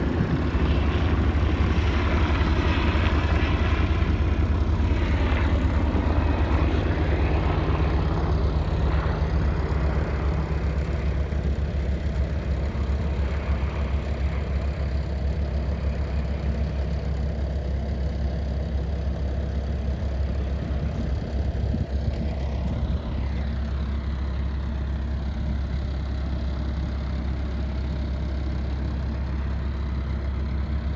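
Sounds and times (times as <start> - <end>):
helicopter engine and rotor: 0.0 - 30.9.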